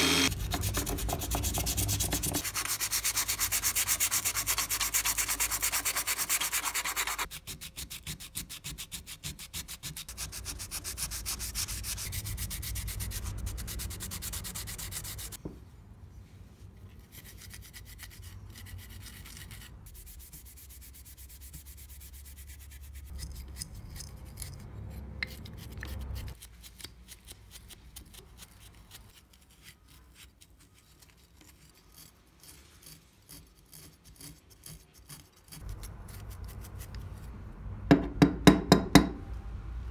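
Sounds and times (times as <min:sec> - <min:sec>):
hand sanding strokes: 0:00.0 - 0:15.4, 0:17.1 - 0:23.7.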